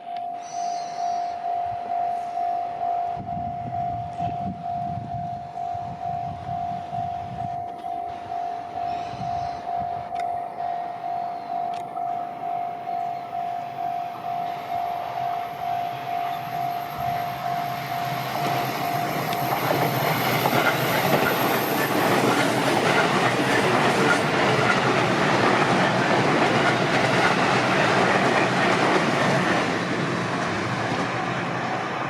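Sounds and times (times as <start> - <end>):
crossing warning tone: 0.0 - 32.0
train wheels rushing on rails: 13.0 - 32.0.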